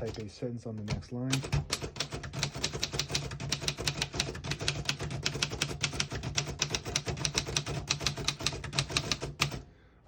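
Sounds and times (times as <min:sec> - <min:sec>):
manual typewriter typing: 0:00.0 - 0:09.6.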